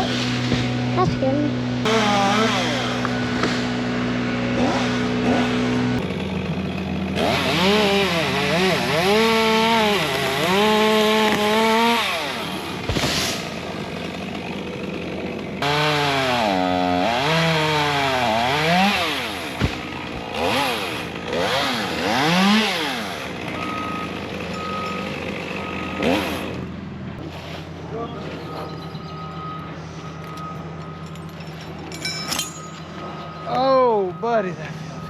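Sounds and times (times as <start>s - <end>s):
chainsaw revving: 0.0s - 27.8s
engine hum: 0.0s - 35.0s
vehicle reversing alarm beeps: 23.5s - 26.1s, 28.0s - 35.0s.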